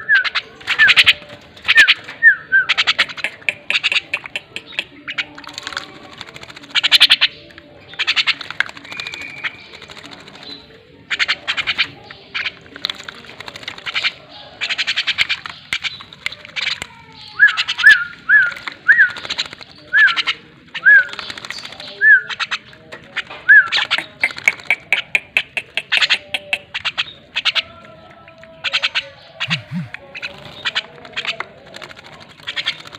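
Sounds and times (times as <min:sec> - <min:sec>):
bird splashing in water: 0:02.9 - 0:27.6, 0:30.1 - 0:32.9.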